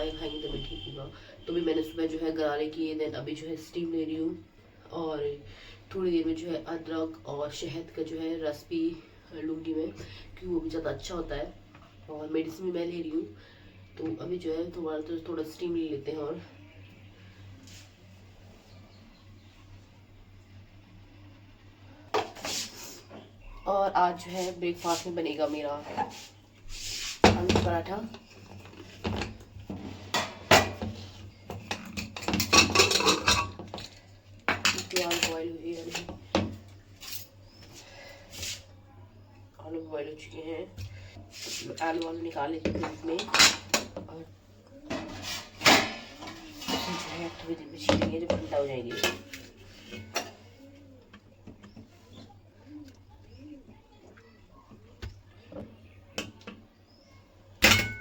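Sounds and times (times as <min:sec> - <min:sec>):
pots and utensils knocking: 0:29.0 - 0:35.4, 0:57.6 - 0:58.0.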